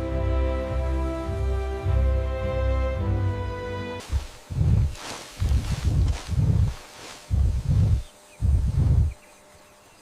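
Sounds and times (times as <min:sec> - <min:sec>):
rustling hiss: 0:00.0 - 0:10.0
low heavy thuds: 0:04.0 - 0:09.1.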